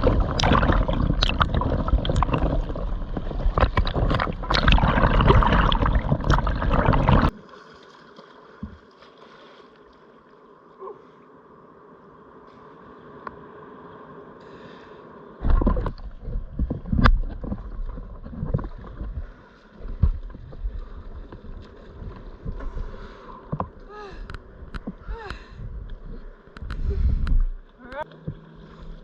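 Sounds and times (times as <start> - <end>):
seawater sloshing and splashing: 0.0 - 10.0.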